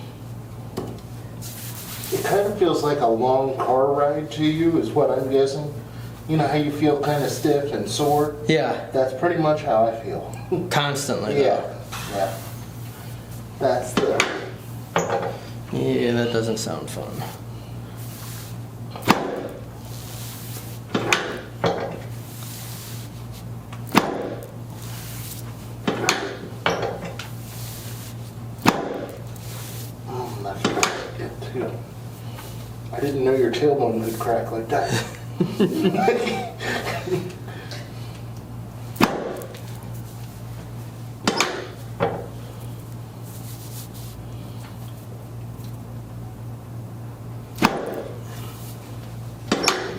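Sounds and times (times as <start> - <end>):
steady low hum: 0.0 - 49.9
sharp cracks of back adjustment: 19.0 - 19.6, 20.9 - 22.1, 23.7 - 24.6, 25.8 - 27.4, 28.6 - 29.4, 39.0 - 39.8, 41.2 - 41.8, 47.6 - 48.2, 49.5 - 49.9.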